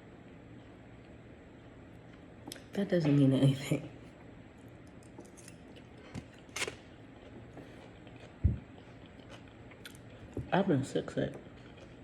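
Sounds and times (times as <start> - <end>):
quiet eating: 3.4 - 12.0.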